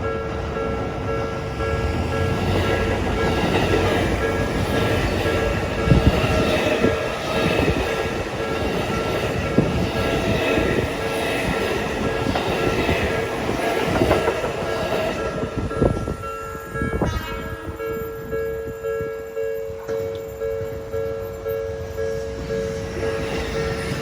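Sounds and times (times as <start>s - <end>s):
crossing warning bell ringing: 0.0s - 24.0s
train wheels clacking over rail joints: 1.7s - 15.8s.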